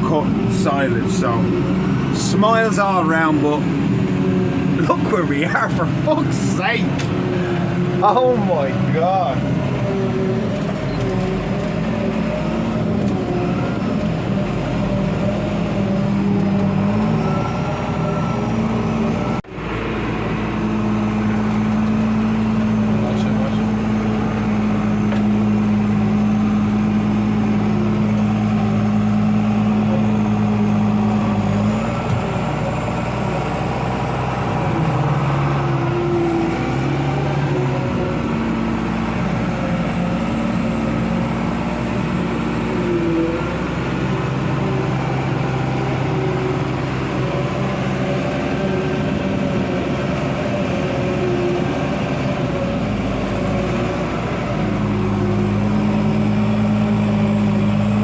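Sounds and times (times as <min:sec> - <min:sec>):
tractor engine running: 0:00.0 - 0:58.0.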